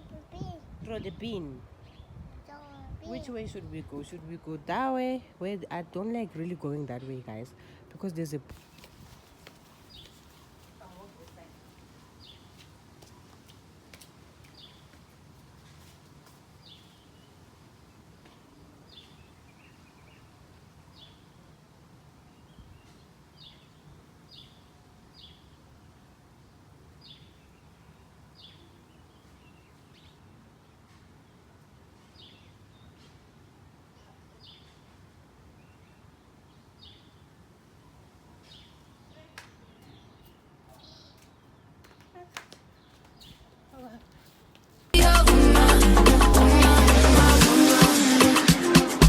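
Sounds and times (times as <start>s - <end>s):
faint outdoor background noise: 0.0s - 49.0s
bird chirping: 9.6s - 11.5s.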